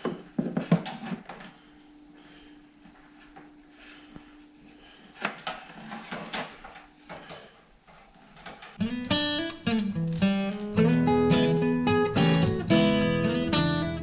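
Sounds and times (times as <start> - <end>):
knocks and clatters of handling: 0.0 - 1.7, 5.2 - 8.8, 9.8 - 10.8
strummed acoustic guitar: 8.8 - 14.0.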